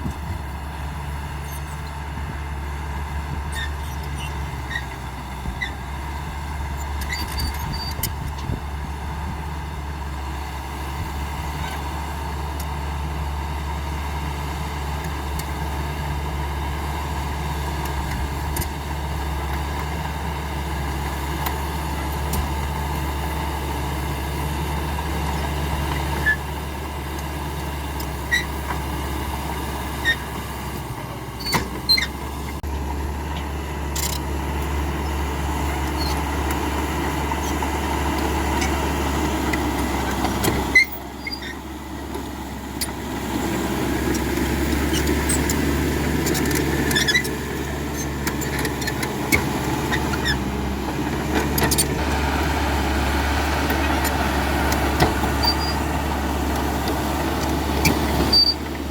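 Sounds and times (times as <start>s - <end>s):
bulldozer diesel engine running: 0.0s - 58.9s
machine squeaks and clanks: 1.4s - 2.0s, 3.5s - 5.9s, 6.7s - 8.6s, 25.4s - 26.5s, 27.9s - 28.9s, 29.5s - 30.5s, 31.3s - 32.6s, 33.3s - 34.3s, 35.0s - 36.6s, 37.4s - 38.8s, 39.5s - 41.7s, 44.1s - 50.5s, 51.3s - 52.0s, 53.6s - 58.9s.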